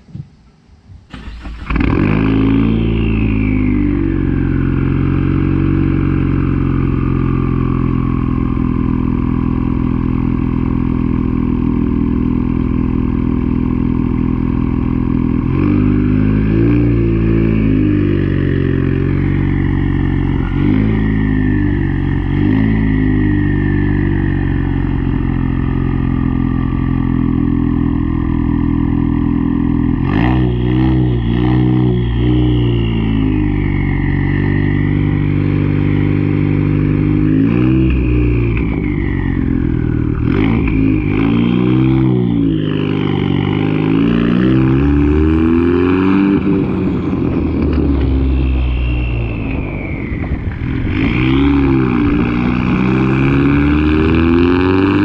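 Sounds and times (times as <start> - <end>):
engine throttle blips: 1.0 - 55.0
car engine idling: 1.1 - 2.0, 2.6 - 15.5, 16.1 - 30.6
turbo whistle: 30.1 - 36.6, 37.3 - 45.7, 48.0 - 53.4.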